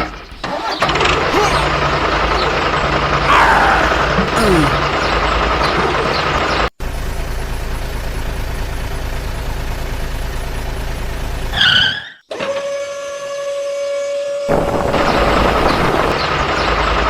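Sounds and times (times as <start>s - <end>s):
vehicle engine running: 4.9s - 11.6s.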